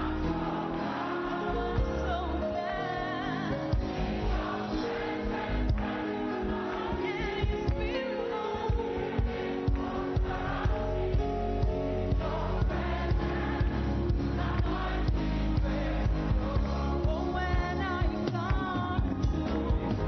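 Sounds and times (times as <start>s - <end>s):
choir singing: 0.0s - 20.0s
band playing steady beat: 8.7s - 20.0s.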